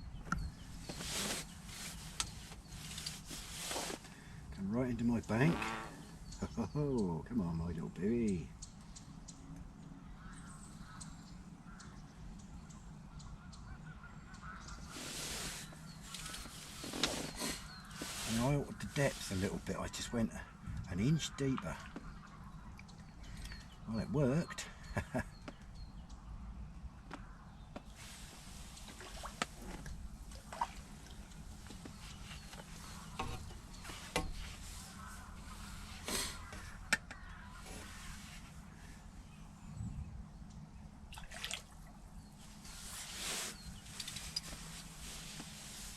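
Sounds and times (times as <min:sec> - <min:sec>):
water splashing and dripping: 0:28.3 - 0:33.3, 0:41.1 - 0:42.0
low steady rumble: 0:29.8 - 0:45.9
waterfowl honking: 0:30.4 - 0:39.0
wind rumble: 0:36.6 - 0:41.1.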